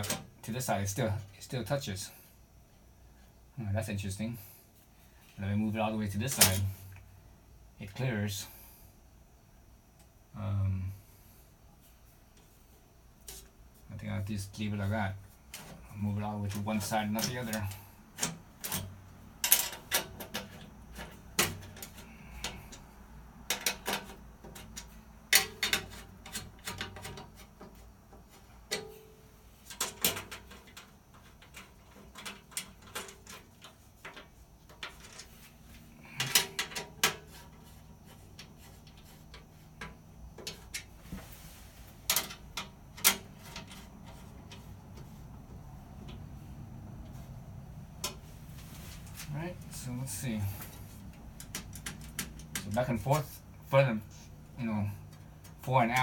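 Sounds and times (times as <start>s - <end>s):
sheet metal clanking and tapping: 28.7s - 29.1s.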